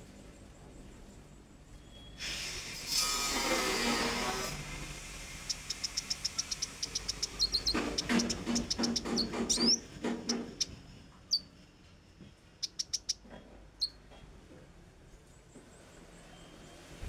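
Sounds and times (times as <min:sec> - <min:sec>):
songbird singing: 0:04.5 - 0:11.5, 0:12.6 - 0:14.0.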